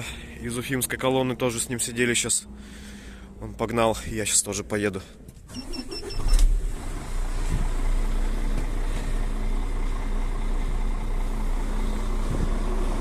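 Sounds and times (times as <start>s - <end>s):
diesel truck engine idling: 0.0s - 5.3s, 6.5s - 13.0s
short electronic beeps: 5.5s - 6.4s.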